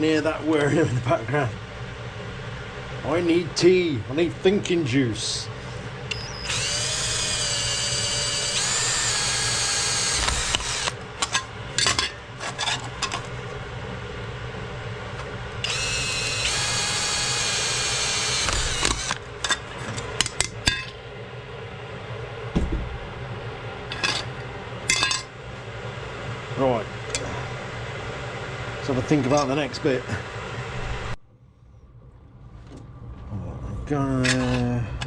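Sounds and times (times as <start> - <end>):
power tool motor whine: 6.1 - 11.4, 15.1 - 20.2.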